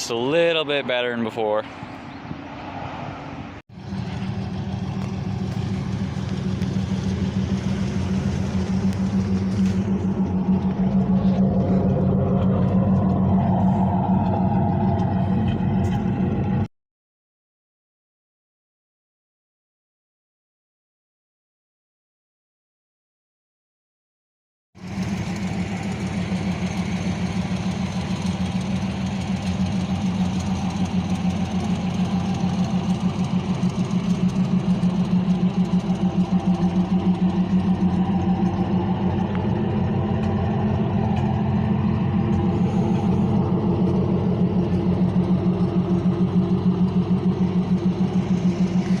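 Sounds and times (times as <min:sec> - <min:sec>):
car engine idling: 0:03.7 - 0:16.7, 0:24.8 - 0:49.0.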